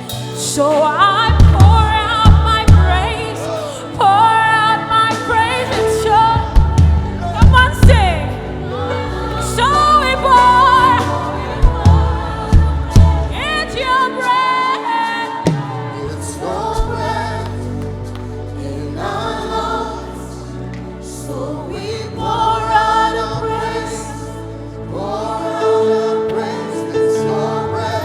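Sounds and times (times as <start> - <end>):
choir singing held notes: 0.0 - 28.0
band with bass and drums: 1.3 - 3.2, 5.1 - 9.3, 10.3 - 13.7.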